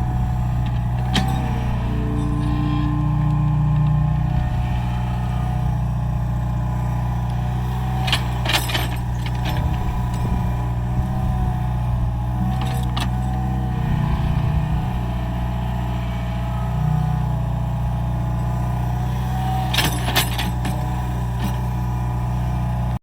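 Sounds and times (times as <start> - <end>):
metallic clanks: 0.0 - 4.6, 8.0 - 10.4
mini excavator engine running: 0.0 - 23.0.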